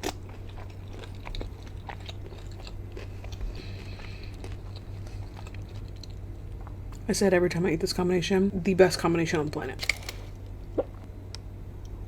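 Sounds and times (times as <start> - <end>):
biting and chewing chicken wings: 0.0 - 7.0
steady low hum: 0.0 - 12.0.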